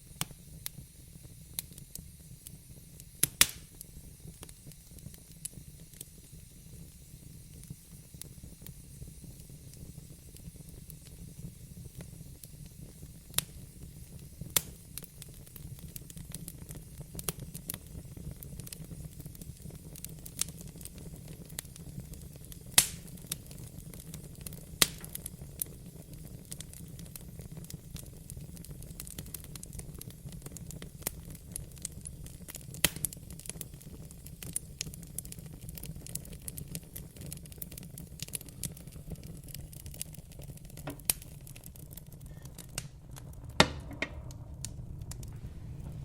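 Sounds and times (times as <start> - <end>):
fire crackles and pops: 0.0 - 46.0
fireplace fire burning: 0.0 - 46.0.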